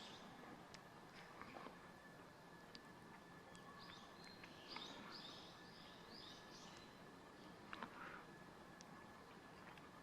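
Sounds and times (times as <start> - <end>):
faint chirp: 0.0 - 10.0
faint ticks: 2.6 - 4.9.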